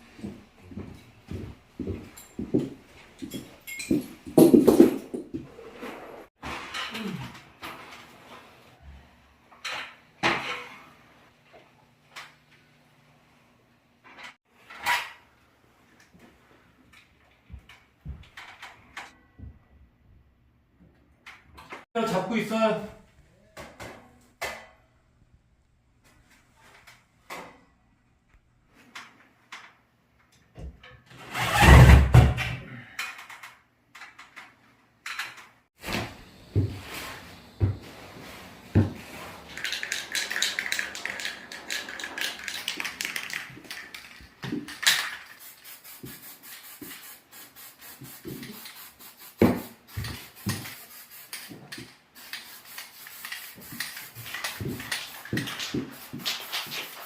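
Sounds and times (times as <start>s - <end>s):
scraping or rubbing: 5.0s - 6.6s, 36.7s - 44.4s.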